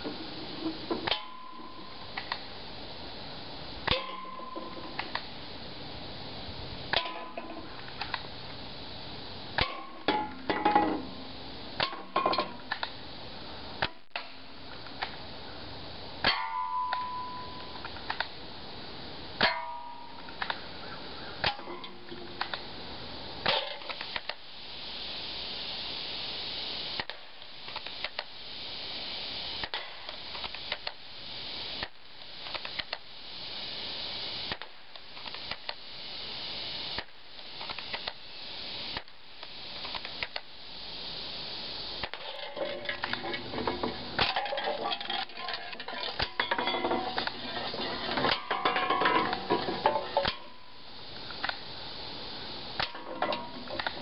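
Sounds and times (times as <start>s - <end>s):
steady hiss: 0.0s - 54.0s
sharp clicks: 7.9s - 8.3s, 17.8s - 18.3s, 23.9s - 24.4s, 27.0s - 28.3s, 29.6s - 31.0s, 31.8s - 33.1s, 34.5s - 35.8s, 37.0s - 38.2s, 38.9s - 40.5s, 51.3s - 51.6s.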